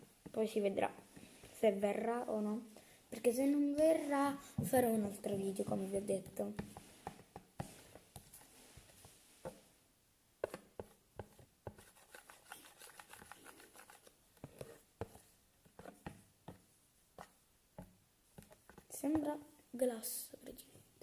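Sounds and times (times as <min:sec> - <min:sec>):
stirrer tapping plastic container: 0:05.6 - 0:08.4, 0:10.4 - 0:19.4.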